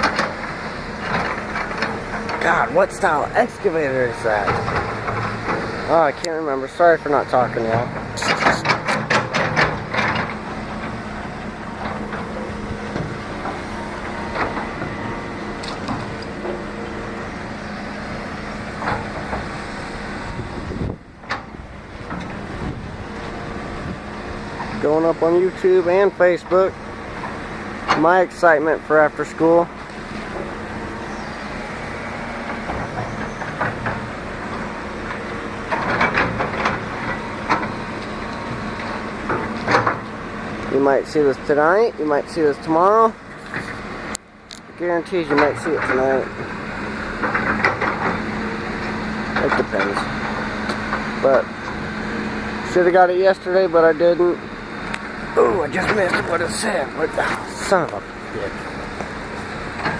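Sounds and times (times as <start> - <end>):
clanks and knocks: 0.0 - 2.6, 3.4 - 6.4, 7.4 - 15.0, 32.5 - 40.1, 47.2 - 48.2
excavator diesel engine running: 0.0 - 59.9.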